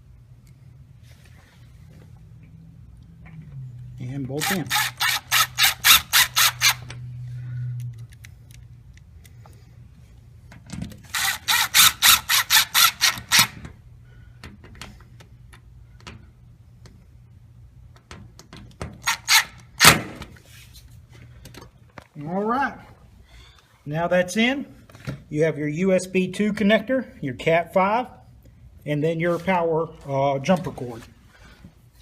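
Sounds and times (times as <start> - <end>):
steady low hum: 0.0 - 32.0
tool rasping on bolts: 4.4 - 6.9, 11.1 - 13.6, 18.9 - 19.9.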